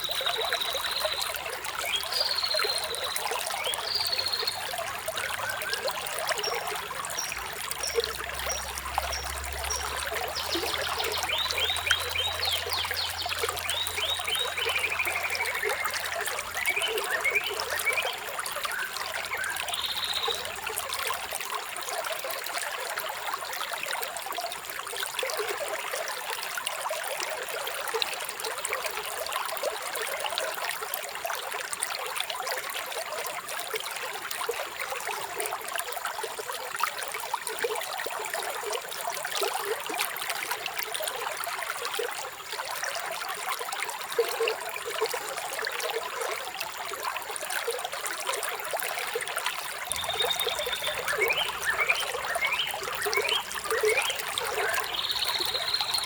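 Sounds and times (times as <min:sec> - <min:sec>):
small birds chirping: 0:00.0 - 0:20.6, 0:49.6 - 0:56.0
water trickling: 0:00.0 - 0:56.0.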